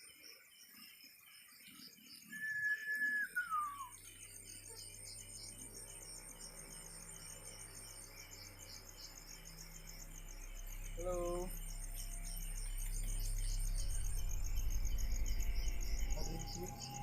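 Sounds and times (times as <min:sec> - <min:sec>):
crickets chirring: 0:00.0 - 0:17.0
low steady hum: 0:03.8 - 0:17.0.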